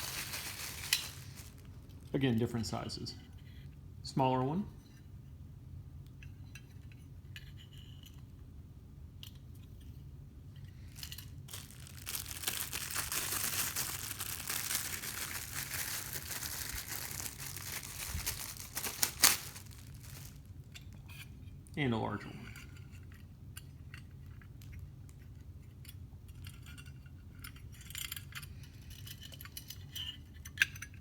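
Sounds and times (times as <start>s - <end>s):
packaging crinkling and tearing: 0.0s - 1.8s, 10.8s - 20.5s.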